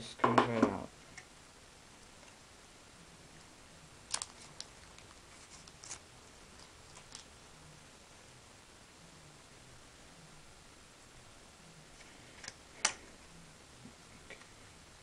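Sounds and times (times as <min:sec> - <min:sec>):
plastic packaging clicks: 0:04.1 - 0:06.0, 0:06.6 - 0:07.3.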